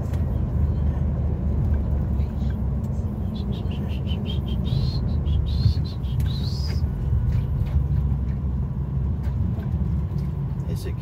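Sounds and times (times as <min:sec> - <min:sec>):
truck engine low rumble: 0:00.0 - 0:11.0.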